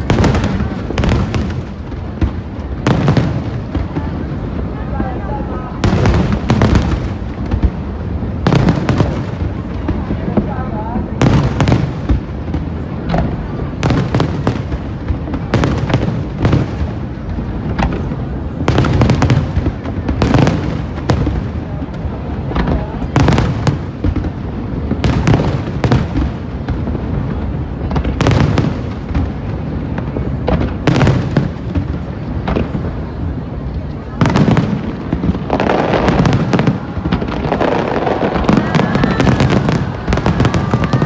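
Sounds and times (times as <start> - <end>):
fireworks bangs: 0.0 - 41.0
low rumble of explosions: 0.0 - 41.0.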